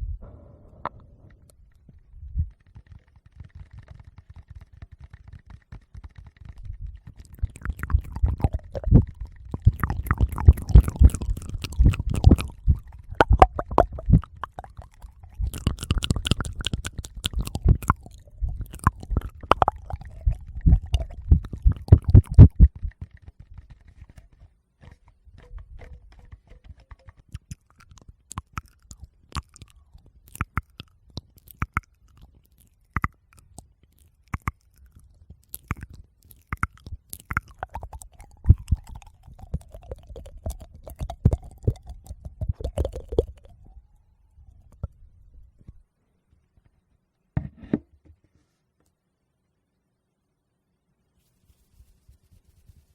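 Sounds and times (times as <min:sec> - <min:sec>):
small clicks: 0:00.8 - 0:43.4
fingers rubbing microphones: 0:02.2 - 0:29.7.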